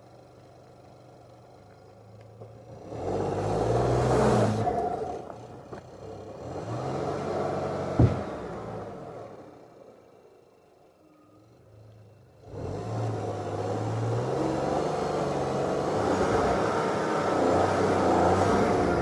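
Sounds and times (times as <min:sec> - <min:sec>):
car engine revving: 0:02.7 - 0:09.8, 0:11.8 - 0:19.0.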